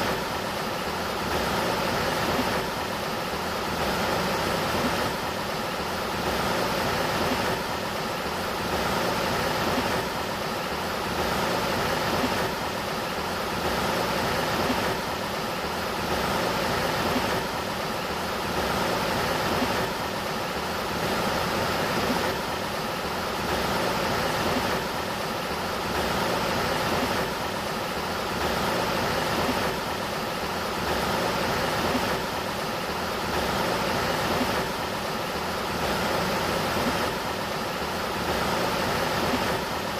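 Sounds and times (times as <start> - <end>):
river water rushing: 0.0 - 39.9.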